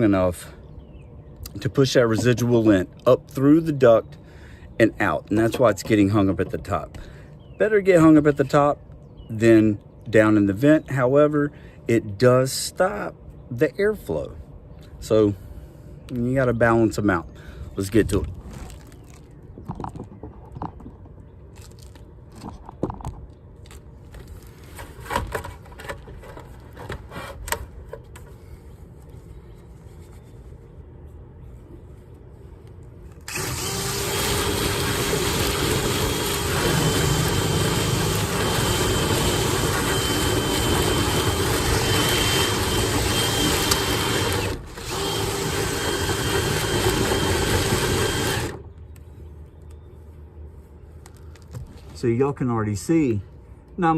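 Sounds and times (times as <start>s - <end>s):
power drill whining: 33.3s - 48.6s.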